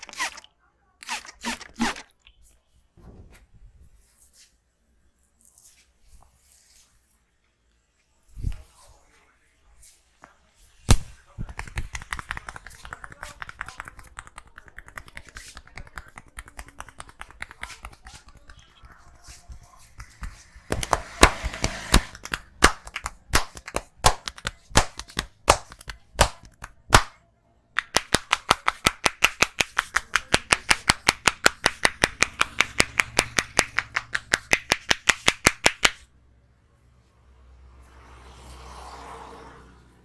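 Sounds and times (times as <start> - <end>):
hands slapping and tapping head: 10.9 - 27.2, 27.8 - 36.1.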